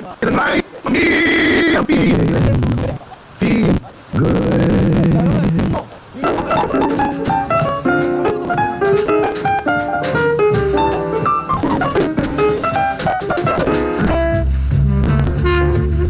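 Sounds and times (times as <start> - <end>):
instrumental jazz on radio: 0.0 - 16.0.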